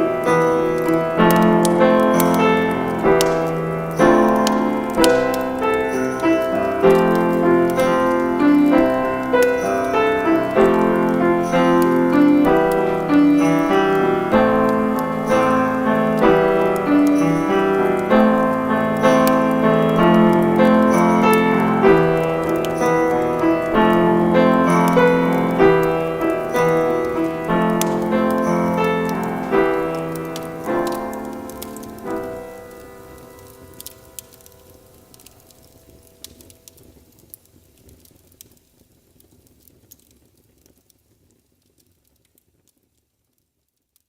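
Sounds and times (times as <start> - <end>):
slow piano chords: 0.0 - 36.8.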